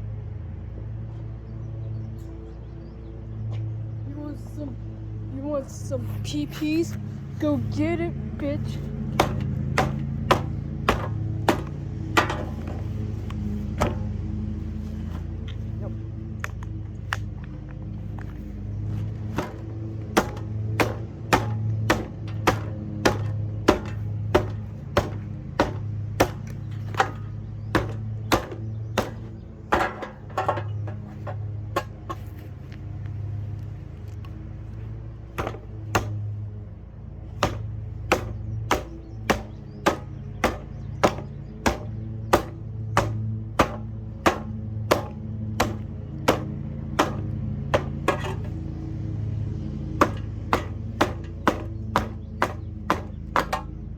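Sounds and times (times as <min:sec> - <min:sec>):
box fan humming: 0:06.3 - 0:17.1, 0:18.0 - 0:53.9
sharp knocking: 0:09.2 - 0:12.9, 0:19.4 - 0:32.2, 0:37.4 - 0:48.6.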